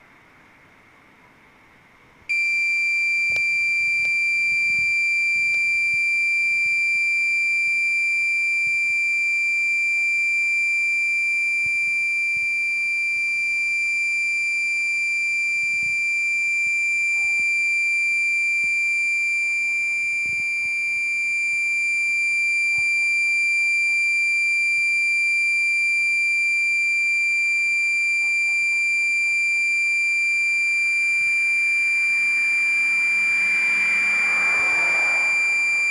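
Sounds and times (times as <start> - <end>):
high-pitched electronic tone: 30.7 - 35.9.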